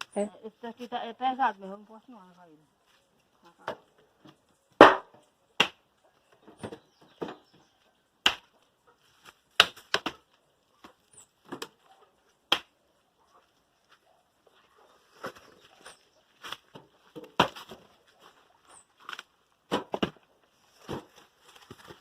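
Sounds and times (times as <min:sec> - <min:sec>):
firewood sticks knocking: 0:03.6 - 0:05.8, 0:08.2 - 0:11.8, 0:16.4 - 0:18.0, 0:19.0 - 0:20.2.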